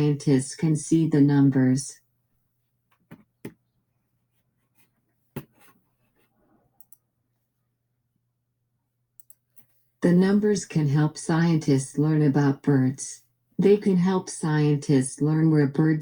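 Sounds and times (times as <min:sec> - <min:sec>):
faint clicks and taps: 0:02.9 - 0:03.6.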